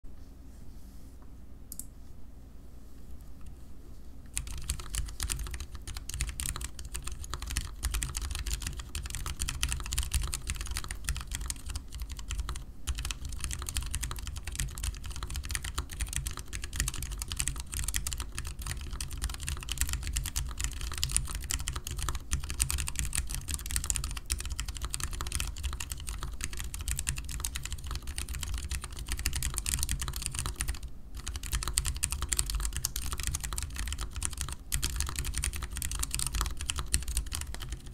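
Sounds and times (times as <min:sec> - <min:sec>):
fast keyboard typing: 0:04.3 - 0:37.9.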